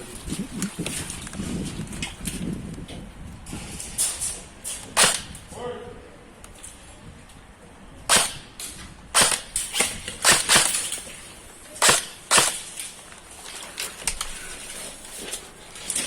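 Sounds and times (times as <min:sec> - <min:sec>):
airsoft gun shots: 0:04.9 - 0:05.4, 0:08.1 - 0:11.1, 0:11.8 - 0:12.8.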